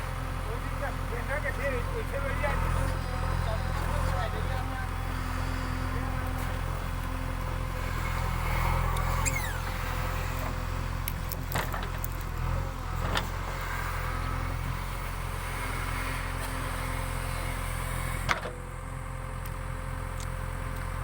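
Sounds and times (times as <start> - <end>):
diesel engine running: 0.0 - 21.0.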